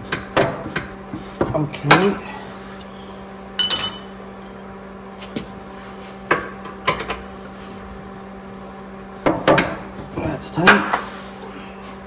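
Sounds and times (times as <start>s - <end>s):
wrench clinking on steel: 3.6s - 4.6s.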